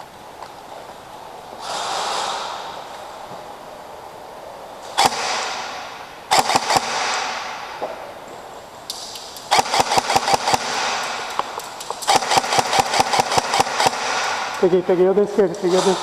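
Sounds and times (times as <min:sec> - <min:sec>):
airsoft rifle firing: 0:04.9 - 0:08.0, 0:09.0 - 0:14.9.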